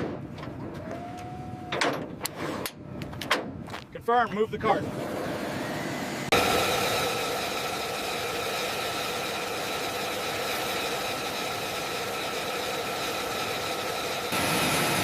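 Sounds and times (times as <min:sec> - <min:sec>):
engine running with high whine: 0:04.8 - 0:15.0.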